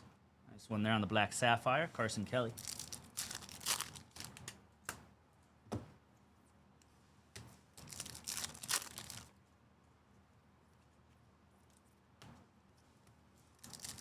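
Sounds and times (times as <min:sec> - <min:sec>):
trading cards rustling and clicking: 0:02.6 - 0:04.6, 0:13.6 - 0:14.0.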